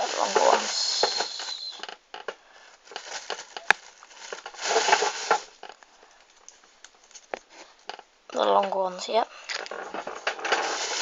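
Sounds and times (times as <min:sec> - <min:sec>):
rustle: 0:00.0 - 0:02.0, 0:02.7 - 0:11.0
small objects clicking and tapping: 0:00.0 - 0:08.7.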